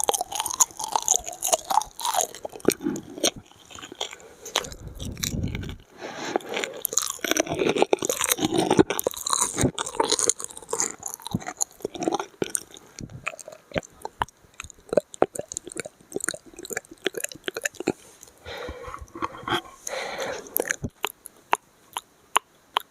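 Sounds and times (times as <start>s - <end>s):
wet mouth smacking: 0.0s - 22.9s
tongue clicks: 19.1s - 22.9s.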